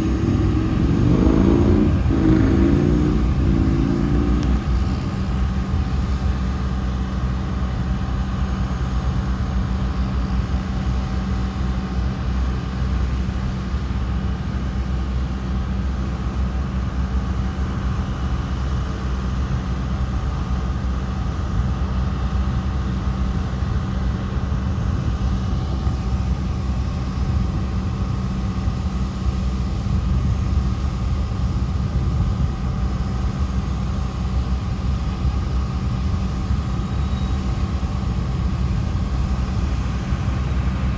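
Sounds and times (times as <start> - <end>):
freight train rolling past: 0.0 - 5.6.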